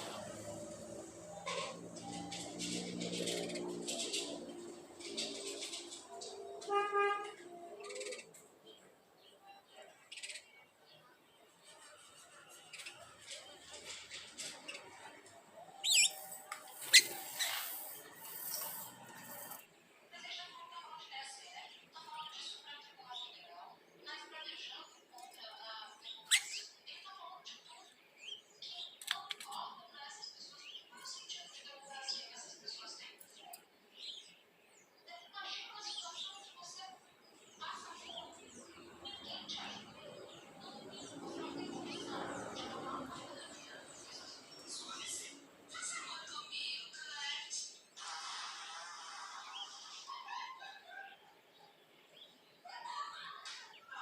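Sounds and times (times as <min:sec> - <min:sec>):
small birds chirping: 0:00.0 - 0:54.0
sharp bird chip: 0:15.8 - 0:18.8.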